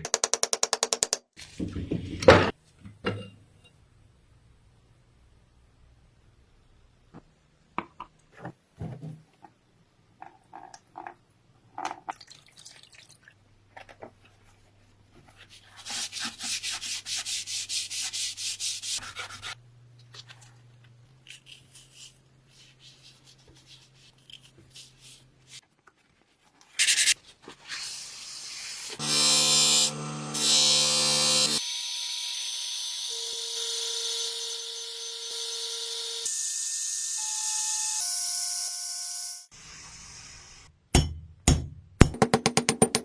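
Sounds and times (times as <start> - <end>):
small electric power tool running: 29.0 - 39.5.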